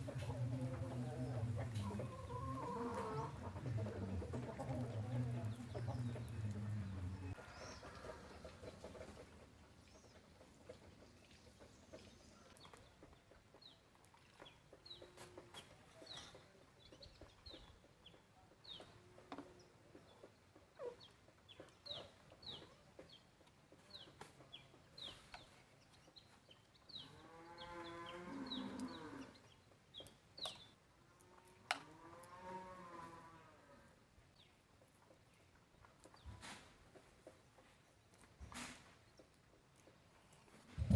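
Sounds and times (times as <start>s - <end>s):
chicken drawn-out call: 0.0s - 6.5s
chickens chirping and clucking: 0.0s - 30.8s, 34.3s - 40.9s.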